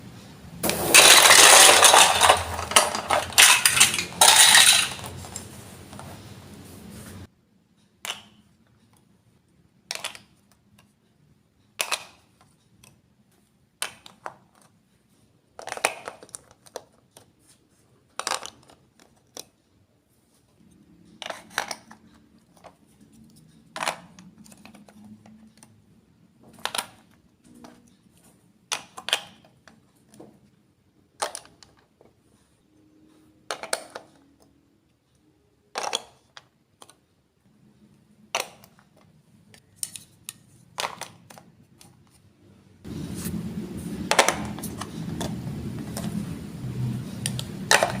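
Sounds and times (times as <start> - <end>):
plastic bricks clicking together: 0.6 - 5.4, 8.0 - 8.5, 9.8 - 10.9, 11.7 - 13.0, 13.8 - 14.7, 15.5 - 17.3, 18.1 - 19.6, 21.2 - 25.8, 26.5 - 27.9, 28.7 - 29.8, 31.1 - 31.9, 33.5 - 34.3, 35.7 - 37.0, 38.3 - 39.0, 39.8 - 42.0, 47.2 - 48.0.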